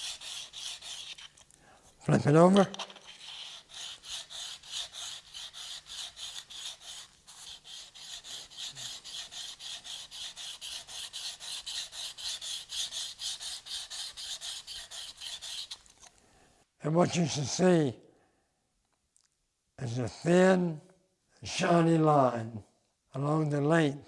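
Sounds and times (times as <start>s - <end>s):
steel scraper rubbing on sharpening plate: 0.0s - 1.4s, 2.6s - 16.0s.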